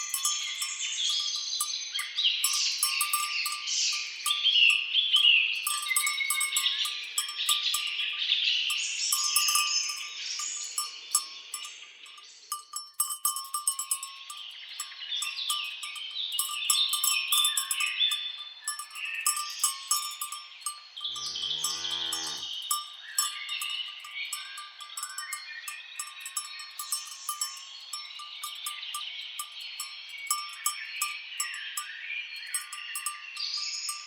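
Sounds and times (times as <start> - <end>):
birds chirping: 0.0 - 34.0
cowbells clinking: 0.0 - 34.0
cow mooing: 21.1 - 22.5.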